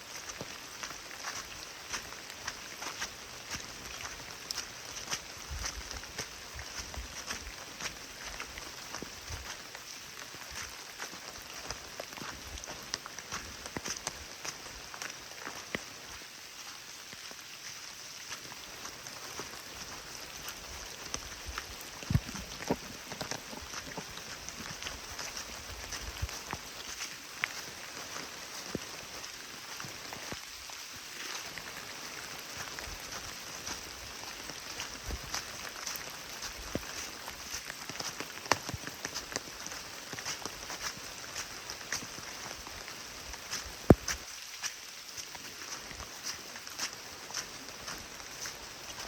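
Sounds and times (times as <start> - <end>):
raindrops ticking near microphone: 0.0 - 49.0
steady rain: 0.0 - 49.0
dull low thumps: 22.0 - 23.2.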